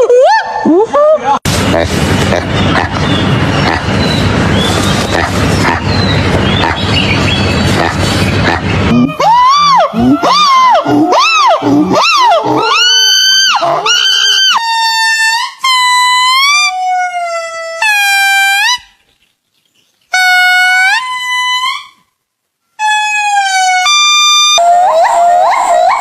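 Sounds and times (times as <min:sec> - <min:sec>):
monkey calling: 0:01.8 - 0:16.8, 0:22.8 - 0:26.0.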